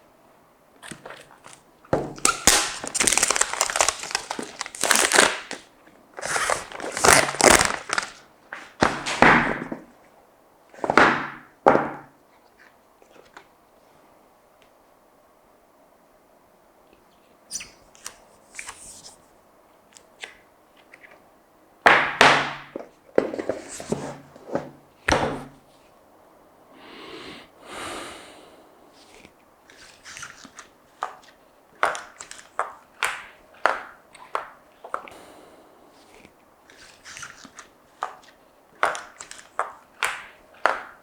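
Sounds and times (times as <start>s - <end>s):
box thunks: 8.6s - 9.9s
packaging clicks and taps: 30.4s - 35.2s, 36.7s - 41.0s.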